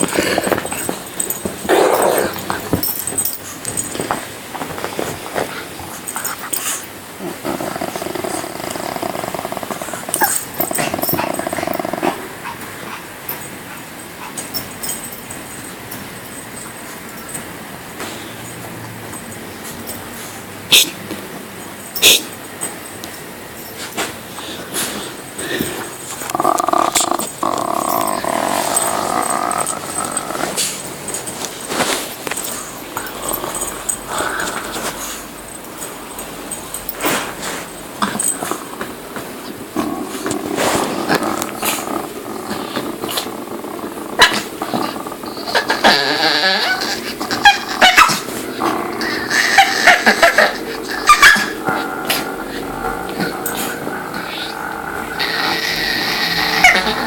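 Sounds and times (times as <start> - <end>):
dog growling: 0.0 - 13.4, 24.4 - 35.6, 36.2 - 57.0.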